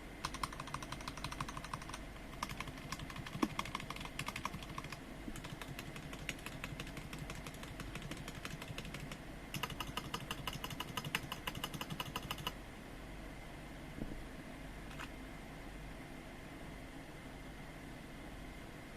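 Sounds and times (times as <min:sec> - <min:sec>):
steady low hum: 0:00.0 - 0:18.9
mechanical keyboard key clicks: 0:00.2 - 0:12.5.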